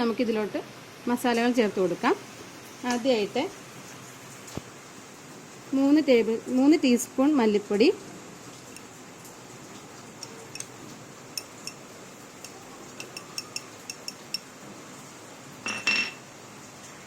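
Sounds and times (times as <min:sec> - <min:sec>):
spoon clattering: 0:10.1 - 0:14.5, 0:15.7 - 0:16.2
metal spoon clinking: 0:10.2 - 0:14.5, 0:15.7 - 0:16.2.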